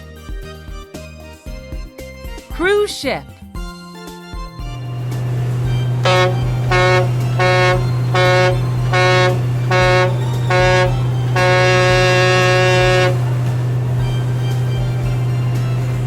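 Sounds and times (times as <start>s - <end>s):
low engine drone: 4.8s - 16.0s
ship horn blasts: 5.3s - 14.8s.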